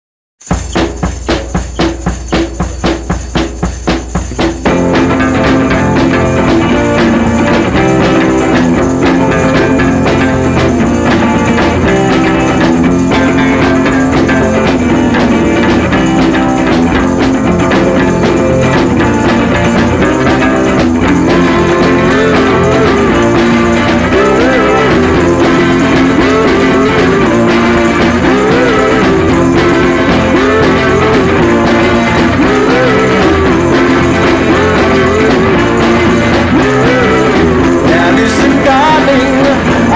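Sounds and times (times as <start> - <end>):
rock music with guitar: 0.5 - 39.9.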